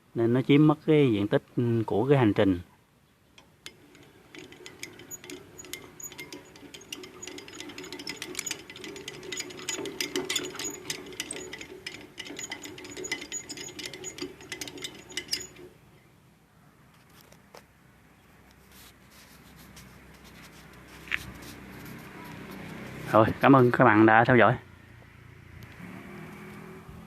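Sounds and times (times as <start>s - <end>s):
gears clicking and rattling: 3.4s - 15.8s
drill press motor humming: 3.6s - 15.7s.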